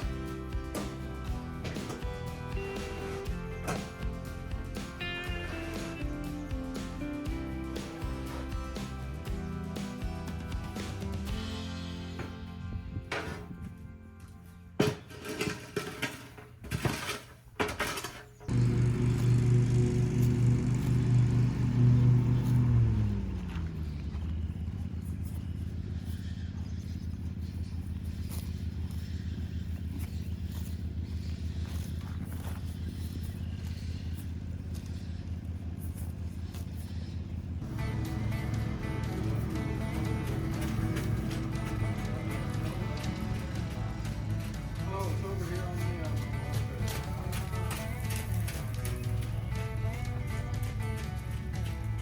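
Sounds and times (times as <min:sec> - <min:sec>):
steady bass line: 0:00.0 - 0:14.8, 0:18.5 - 0:26.0, 0:37.2 - 0:52.0
guitar: 0:00.0 - 0:16.0, 0:18.5 - 0:24.1, 0:37.6 - 0:52.0
engine idling: 0:00.0 - 0:17.1, 0:17.8 - 0:52.0.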